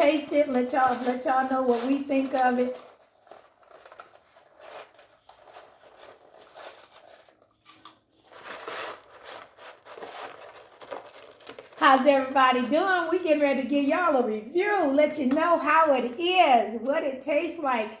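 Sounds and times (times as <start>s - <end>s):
paper packaging crinkling: 0.0s - 12.8s.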